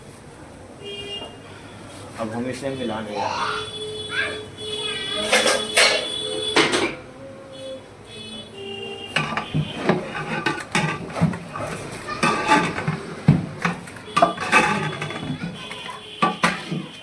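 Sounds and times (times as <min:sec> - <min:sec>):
meat stirred in metal pot: 0:09.1 - 0:17.0.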